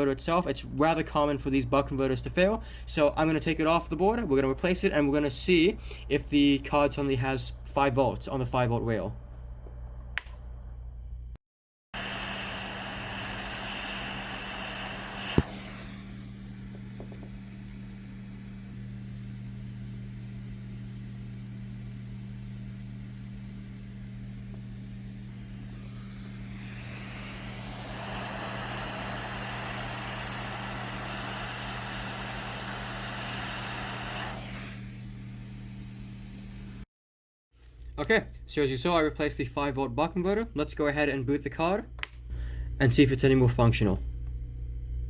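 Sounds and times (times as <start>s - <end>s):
electrical hum: 12.0s - 36.8s, 38.2s - 45.0s
hot air blower hissing: 12.0s - 36.8s.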